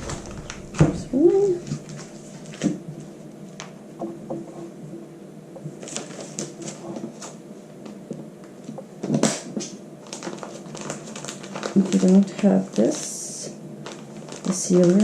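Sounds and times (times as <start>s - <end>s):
plastic bags rustling: 0.0s - 3.6s, 5.8s - 7.4s, 9.0s - 13.2s, 13.8s - 15.0s.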